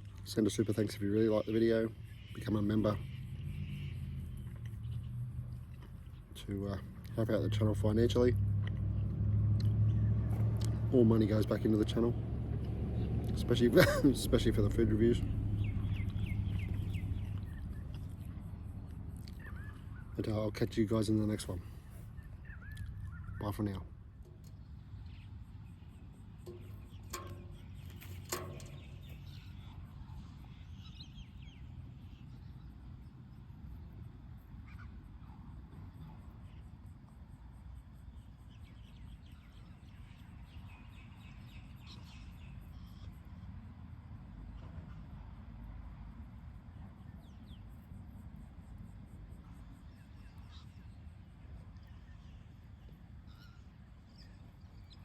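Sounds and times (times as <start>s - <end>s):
birds calling: 0.0s - 9.1s, 9.7s - 33.1s, 49.4s - 55.0s
steady low rumble: 3.1s - 30.6s
high bird chirps: 19.2s - 20.3s, 21.7s - 31.6s.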